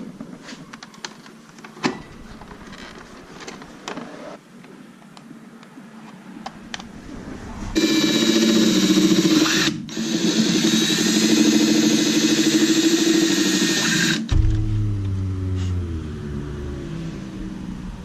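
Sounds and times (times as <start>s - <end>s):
electric drill running: 7.8s - 14.3s.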